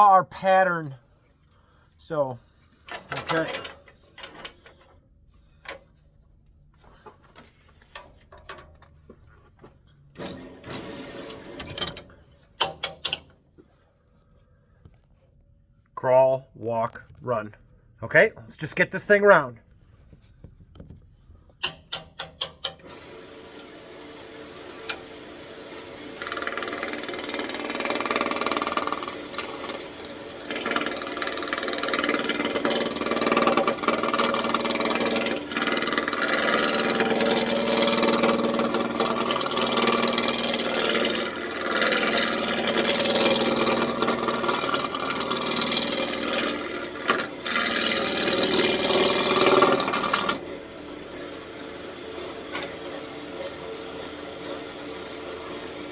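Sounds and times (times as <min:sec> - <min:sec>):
wood lathe tool cutting: 0:22.9 - 0:55.9.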